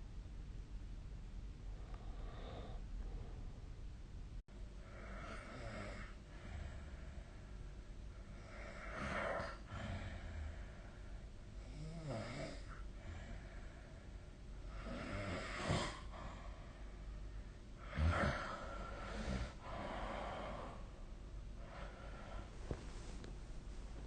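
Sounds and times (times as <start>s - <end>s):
person snoring: 4.8s - 6.7s, 8.3s - 10.6s, 11.6s - 12.8s, 14.7s - 16.5s, 17.8s - 20.8s.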